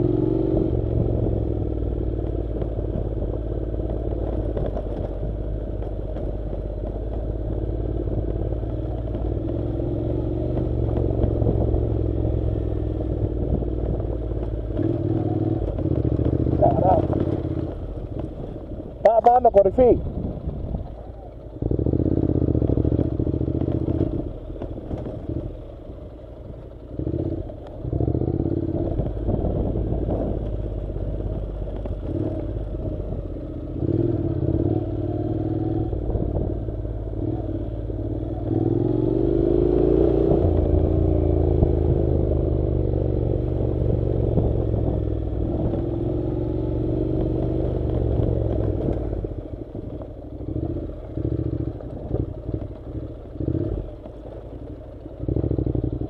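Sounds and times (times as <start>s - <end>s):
motorcycle engine revving: 0.0s - 56.0s.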